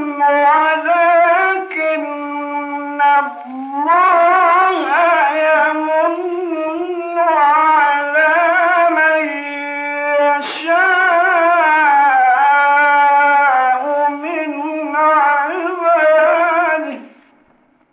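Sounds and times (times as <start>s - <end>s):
man chanting melodically: 0.0s - 17.2s.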